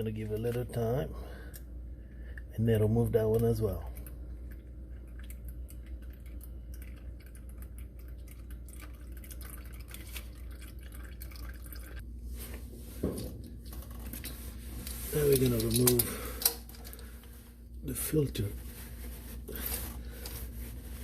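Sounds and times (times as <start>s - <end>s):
low steady hum: 0.0s - 21.0s
oil trickling and dripping: 3.2s - 12.0s.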